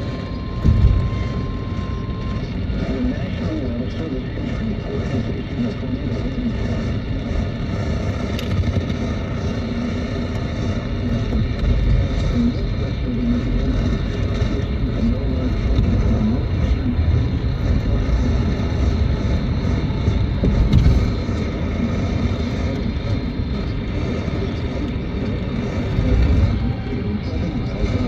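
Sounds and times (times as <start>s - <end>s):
faint steady whistles: 0.0s - 5.1s
faint radio broadcast: 0.0s - 28.0s
radio static and rumble: 0.0s - 28.0s.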